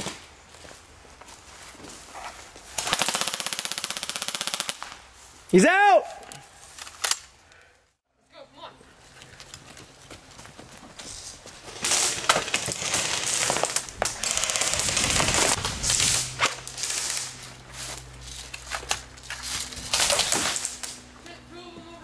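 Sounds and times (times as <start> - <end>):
crunching through dry leaves: 11.1 - 21.2.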